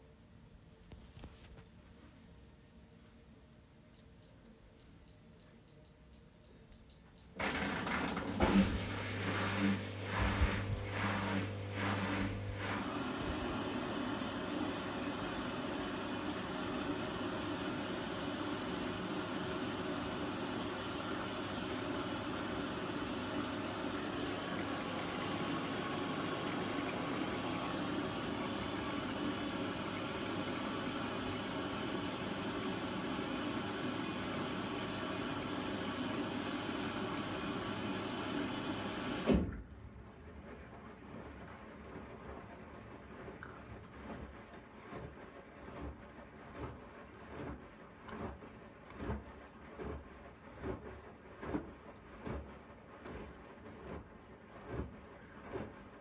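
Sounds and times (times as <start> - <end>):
washing machine beeps: 3.9 - 7.5
washing machine humming and rushing: 6.9 - 56.0.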